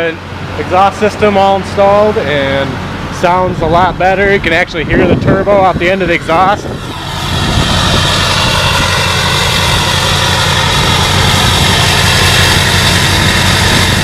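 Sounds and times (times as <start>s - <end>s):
diesel engine exhaust rumble: 0.0s - 14.0s
high turbo whistle: 6.0s - 14.0s.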